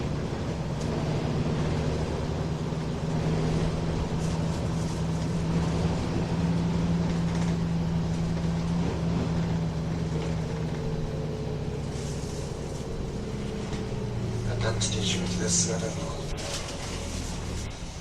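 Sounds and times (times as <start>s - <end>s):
bus diesel engine drone: 0.0s - 18.0s.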